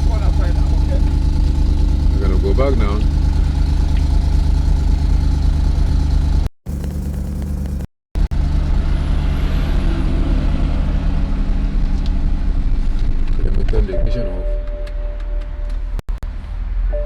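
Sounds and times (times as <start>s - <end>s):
car engine idling: 0.0s - 16.4s.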